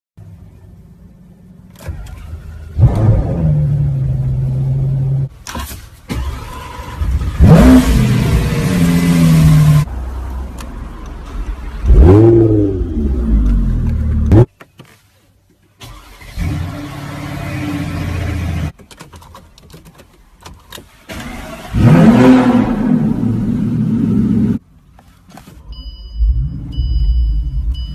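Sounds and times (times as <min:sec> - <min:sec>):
car engines revving: 0:06.3 - 0:14.5, 0:21.1 - 0:24.6.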